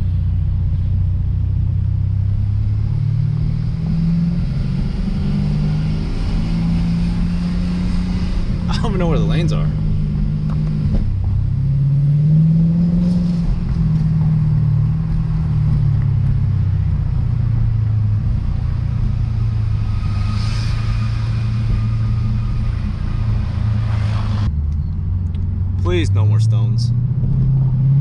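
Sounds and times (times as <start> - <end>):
car engine droning at low revs: 0.0 - 28.0.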